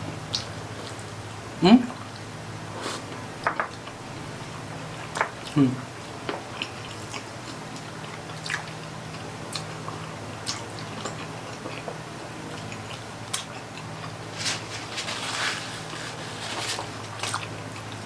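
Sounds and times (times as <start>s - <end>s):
steady low hum: 0.0s - 18.0s
person chewing: 6.3s - 18.0s.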